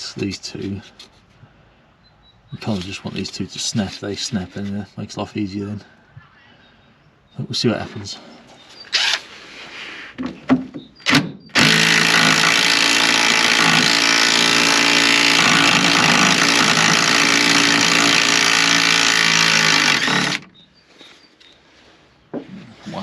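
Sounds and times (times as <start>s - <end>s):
impact wrench running: 11.6s - 20.5s.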